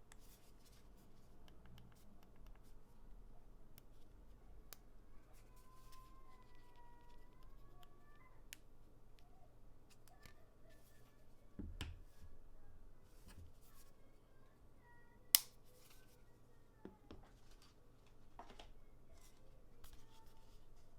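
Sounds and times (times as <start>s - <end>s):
small clicks and taps: 1.4s - 2.7s.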